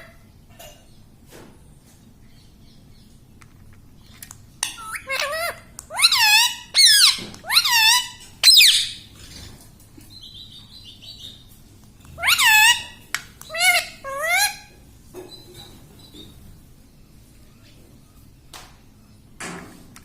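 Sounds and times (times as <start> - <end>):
parrot squawking: 4.6 - 9.1, 12.2 - 14.8
parrot twittering: 4.6 - 9.1, 12.1 - 14.7.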